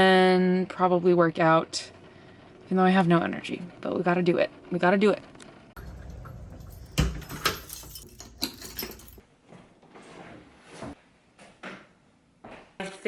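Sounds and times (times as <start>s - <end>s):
rustling of things handled: 5.8s - 10.9s.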